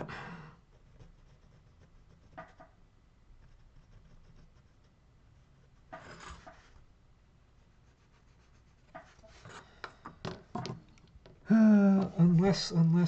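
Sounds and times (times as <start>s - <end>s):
scrapes and taps on wood carving: 1.0s - 2.8s, 8.8s - 11.4s.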